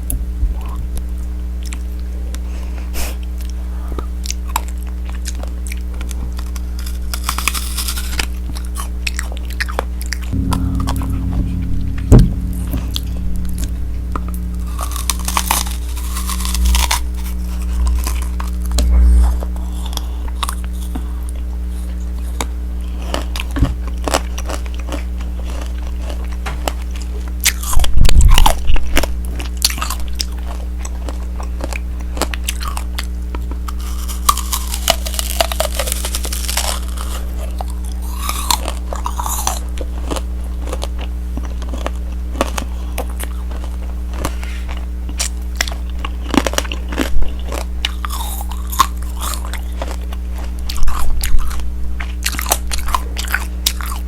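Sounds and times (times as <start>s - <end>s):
candy shell crunching: 6.4s - 8.7s, 14.7s - 18.4s.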